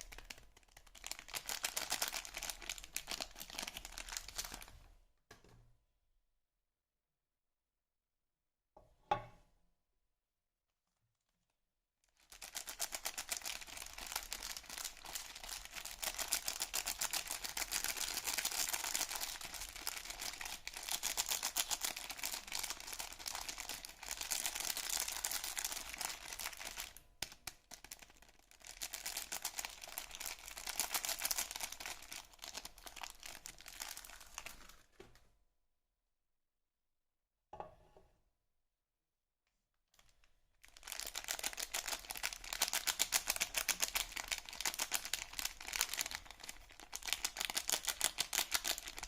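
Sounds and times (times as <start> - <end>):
wrapping crinkling: 0.0 - 4.8, 12.1 - 35.0, 40.0 - 49.0.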